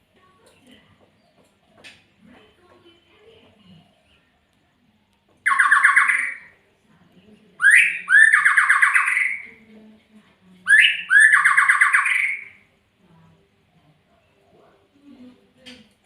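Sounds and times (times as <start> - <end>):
songbird rattling calls: 5.5 - 6.5, 7.6 - 9.5, 10.7 - 12.6.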